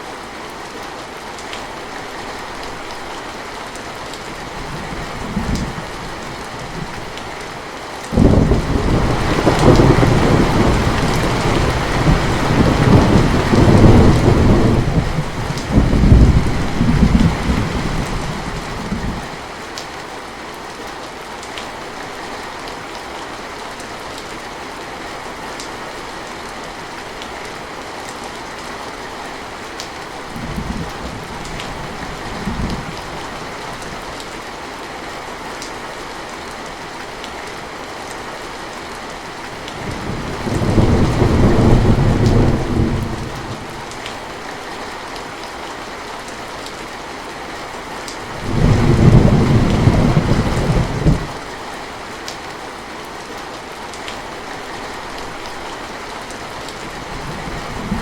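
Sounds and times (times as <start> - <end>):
steady rain: 0.0 - 58.0
thunder rumbling: 8.2 - 19.3, 39.8 - 43.9, 48.4 - 51.4, 56.8 - 58.0.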